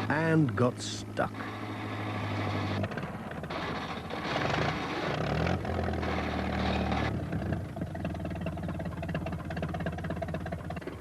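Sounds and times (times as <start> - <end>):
tractor engine revving: 0.0 - 11.0.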